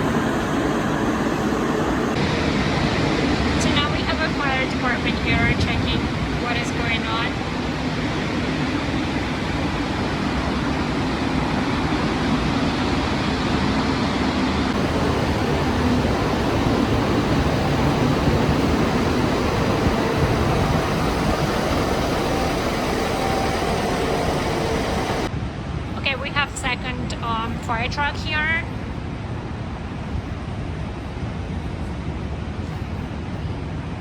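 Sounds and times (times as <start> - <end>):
loud mechanical roar: 0.0 - 2.3, 14.8 - 25.3
low hum: 0.0 - 2.6, 14.8 - 25.3.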